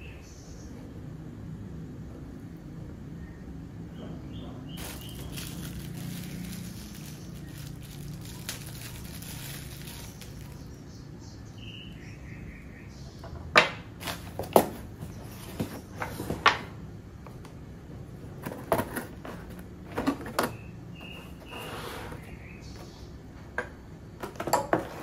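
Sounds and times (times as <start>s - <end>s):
faint high chirps: 3.1s - 13.3s
hard objects clicking and knocking: 23.5s - 25.0s.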